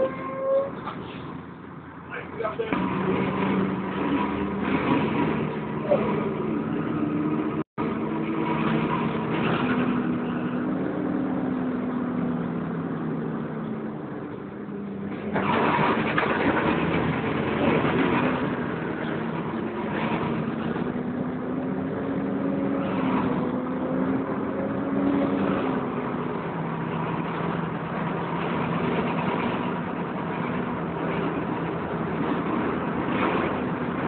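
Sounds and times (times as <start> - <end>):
bus engine and cooling fan: 0.0 - 34.0
loud rough noise: 2.5 - 13.4, 15.0 - 34.0.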